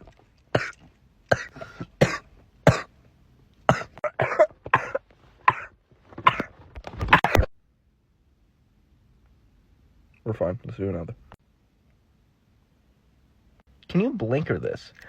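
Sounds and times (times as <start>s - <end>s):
person coughing: 0.6s - 2.9s, 3.7s - 6.5s.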